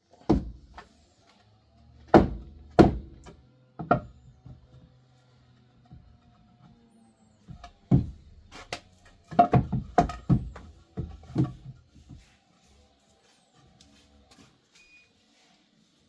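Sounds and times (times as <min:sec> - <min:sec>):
dull heavy knocks and thumps: 0:00.3 - 0:00.8, 0:02.1 - 0:04.6, 0:07.5 - 0:08.3, 0:09.3 - 0:12.2.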